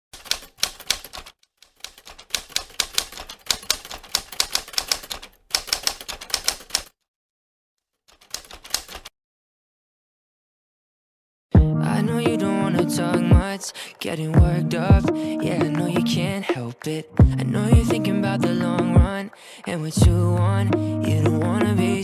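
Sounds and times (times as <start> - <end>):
keyboard typing clicks: 0.2 - 6.9, 8.1 - 9.1.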